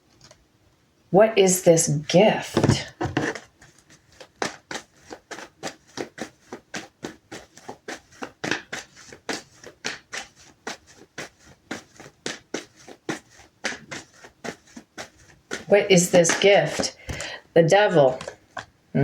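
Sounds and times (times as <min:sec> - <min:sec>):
cards being shuffled: 0:02.5 - 0:17.4.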